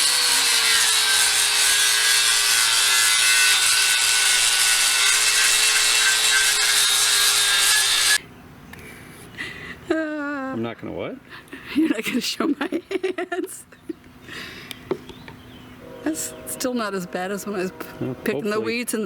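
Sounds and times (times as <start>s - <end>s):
angle grinder grinding steel: 0.0s - 8.2s.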